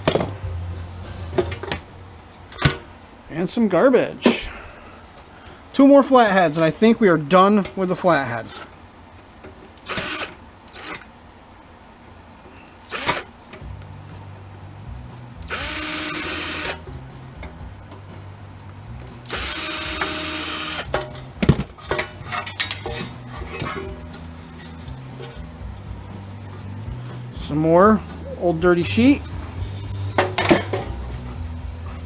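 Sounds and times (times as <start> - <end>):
cordless drill whirring: 9.8 - 11.1, 12.8 - 13.3, 15.5 - 16.8, 19.3 - 20.9.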